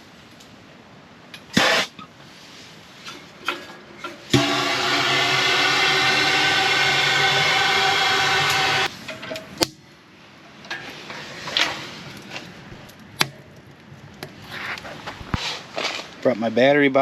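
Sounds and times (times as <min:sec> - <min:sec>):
gas torch roaring: 0:01.5 - 0:02.1, 0:04.2 - 0:09.7.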